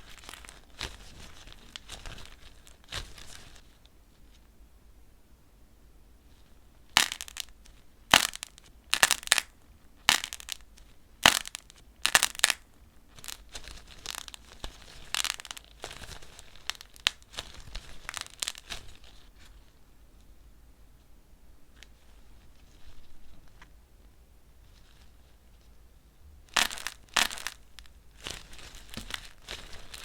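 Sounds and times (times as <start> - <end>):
small crackles: 0.0 - 4.5, 6.3 - 20.3, 21.7 - 25.8, 26.5 - 30.0
dried clay crunching: 6.9 - 19.4, 26.5 - 30.0.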